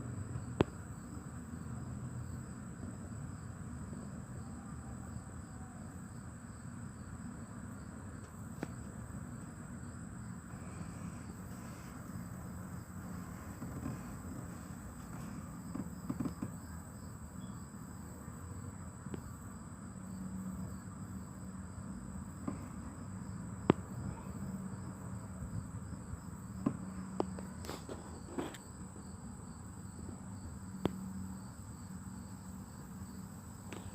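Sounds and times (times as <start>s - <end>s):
insects trilling: 0.1s - 33.9s.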